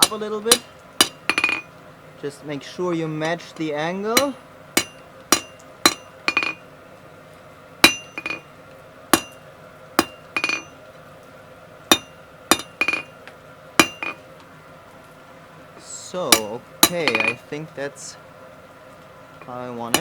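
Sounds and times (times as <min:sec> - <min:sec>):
hammer striking steel on anvil: 0:00.0 - 0:01.7, 0:03.6 - 0:06.6, 0:07.8 - 0:08.5, 0:09.1 - 0:09.4, 0:10.0 - 0:10.8, 0:11.9 - 0:13.1, 0:13.8 - 0:14.2, 0:16.3 - 0:17.5.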